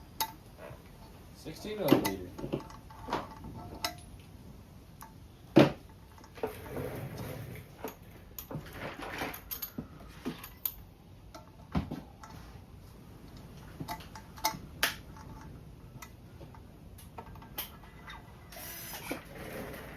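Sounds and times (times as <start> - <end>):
metal tools clinking: 1.0 - 4.2, 6.0 - 11.6.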